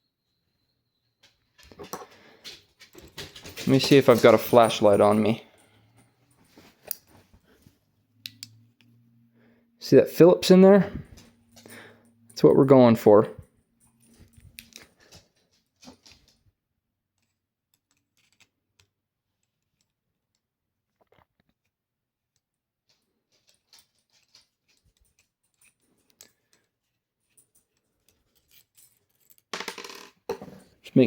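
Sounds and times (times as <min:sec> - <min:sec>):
small clicks of screwdriver and pen parts: 0:17.2 - 0:20.5.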